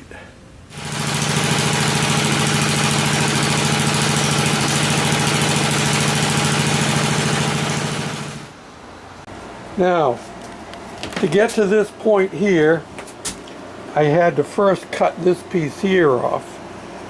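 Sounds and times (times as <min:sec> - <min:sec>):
riding mower engine running: 0:00.7 - 0:08.6.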